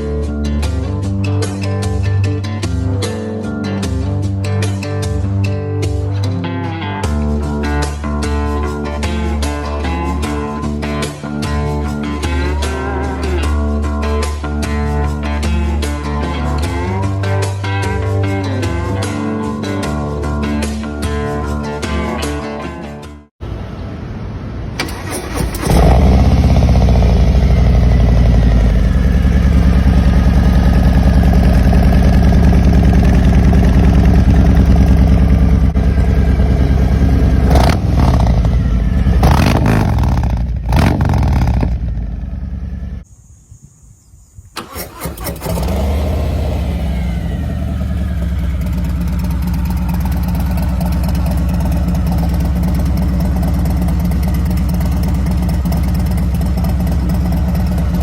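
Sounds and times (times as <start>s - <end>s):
motorcycle engine idling and revving: 24.8s - 43.1s, 44.6s - 58.0s.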